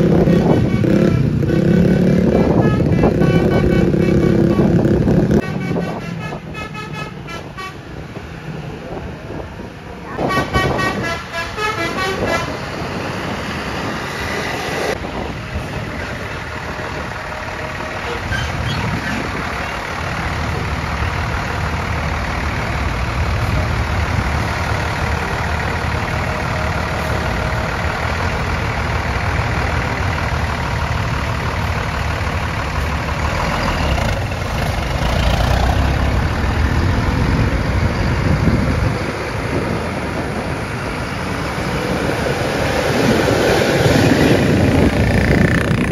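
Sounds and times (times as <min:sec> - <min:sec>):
bus engine rumble: 0:00.0 - 0:45.9
bus horn tune of toots: 0:00.2 - 0:08.0, 0:10.2 - 0:12.7.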